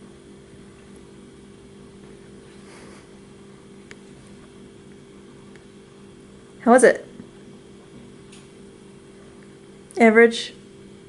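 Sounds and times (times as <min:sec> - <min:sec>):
low electrical hum: 0:00.0 - 0:11.0
faint soft rustle: 0:02.4 - 0:03.2.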